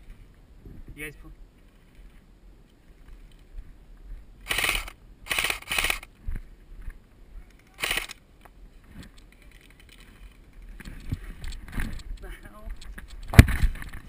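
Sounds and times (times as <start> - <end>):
airsoft gun bursts: 4.4 - 6.1, 7.7 - 8.2.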